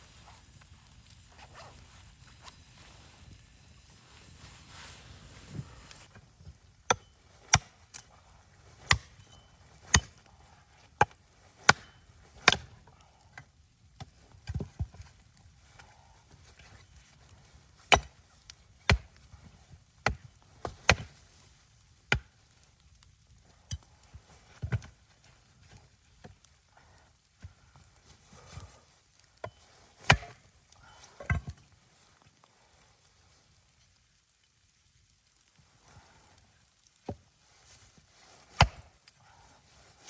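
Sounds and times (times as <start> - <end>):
wood being chopped: 6.9 - 7.7, 8.8 - 9.2, 9.8 - 10.2, 11.0 - 12.7, 17.9 - 18.2, 18.9 - 19.2, 20.0 - 21.1, 30.0 - 30.4, 38.5 - 38.9.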